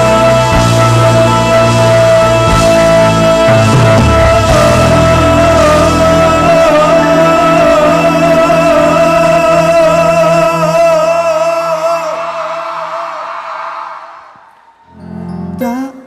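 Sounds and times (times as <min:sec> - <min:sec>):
pop band chord: 0:00.0 - 0:12.8.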